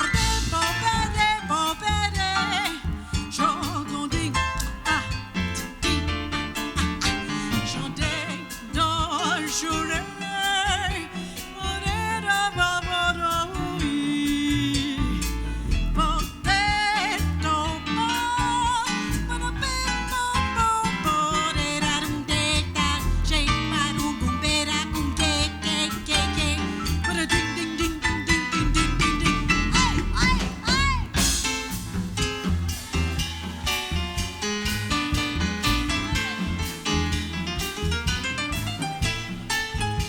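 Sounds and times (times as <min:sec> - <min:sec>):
drums with cymbals: 0:00.0 - 0:40.0
walking bass line: 0:00.0 - 0:40.0.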